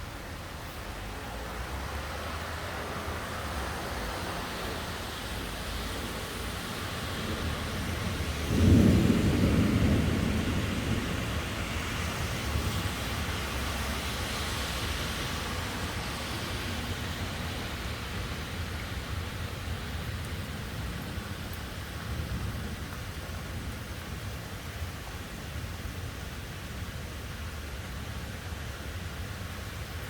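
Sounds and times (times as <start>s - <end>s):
heavy rain: 0.0s - 30.0s
wind: 0.0s - 30.0s
thunder clap: 7.2s - 13.3s.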